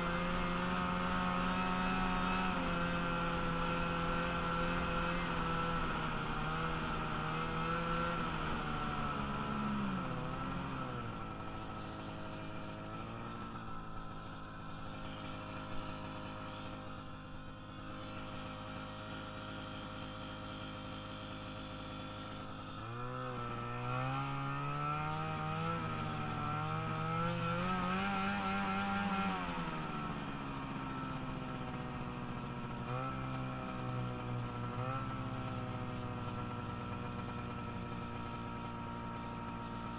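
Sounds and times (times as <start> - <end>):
small vehicle engine revving: 0.0 - 39.9.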